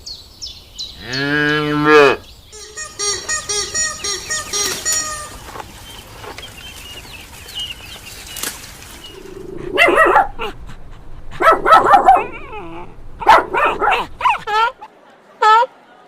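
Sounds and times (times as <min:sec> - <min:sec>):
faint high chirping: 0:02.4 - 0:09.5
dog barking: 0:09.6 - 0:10.6, 0:11.3 - 0:14.7.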